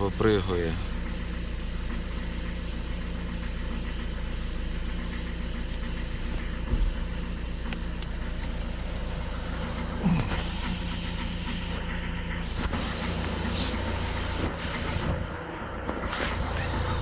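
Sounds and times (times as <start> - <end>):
diesel engine idling rough: 0.0 - 17.0
engine thump: 0.0 - 17.0.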